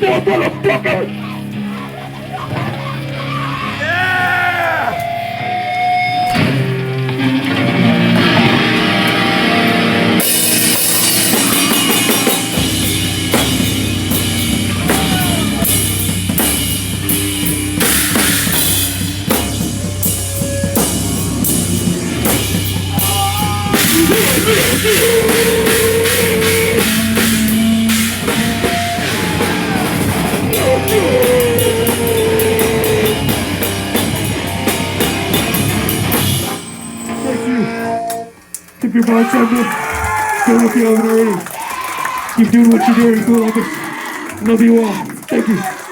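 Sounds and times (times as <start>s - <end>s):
heavy rock band playing: 0.0s - 38.3s
bending electric guitar: 0.0s - 38.8s
cymbals crashing: 10.2s - 38.5s.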